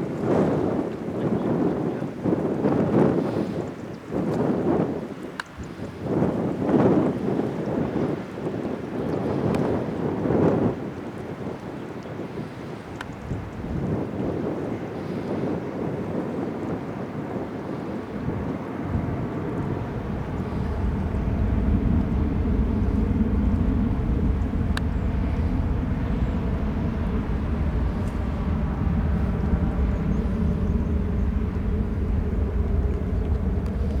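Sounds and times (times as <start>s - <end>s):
jet engines rumbling: 12.4s - 34.0s.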